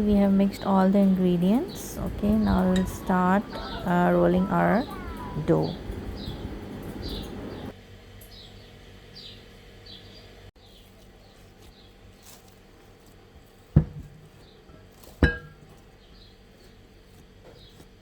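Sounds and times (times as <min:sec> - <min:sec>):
small bird chirping: 0:01.4 - 0:12.4
sharp thumps: 0:13.8 - 0:14.3, 0:15.2 - 0:15.8.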